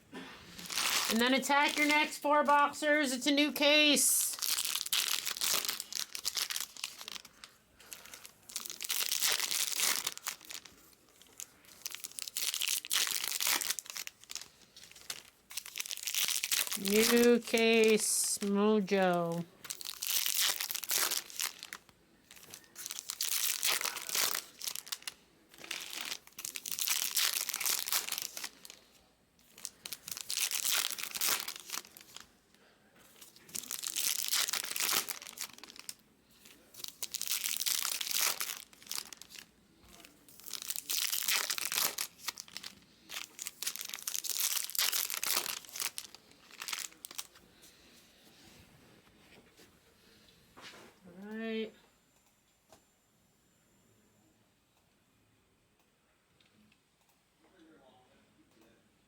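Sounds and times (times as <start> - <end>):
plastic packaging crinkling and tearing: 0.5 - 2.1, 4.2 - 32.3, 33.1 - 47.4.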